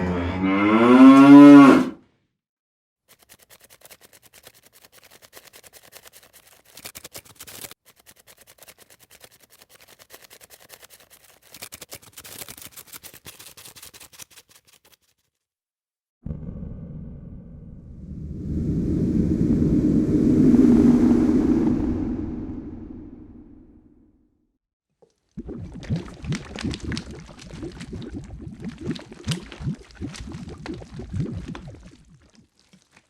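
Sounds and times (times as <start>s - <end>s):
cow mooing: 0.0s - 2.0s.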